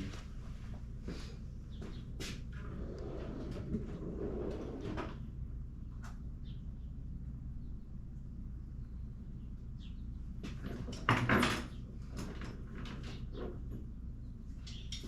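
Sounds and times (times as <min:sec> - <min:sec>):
steady low hum: 0:00.0 - 0:15.0
tools clattering: 0:14.6 - 0:15.0
tools clicking and knocking: 0:14.6 - 0:15.0.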